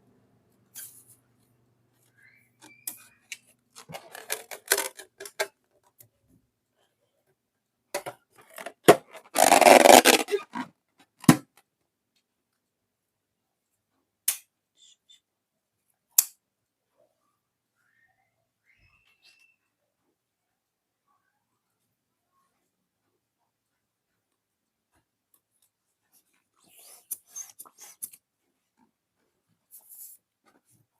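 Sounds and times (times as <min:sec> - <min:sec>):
sharp snaps: 0:14.3 - 0:14.5.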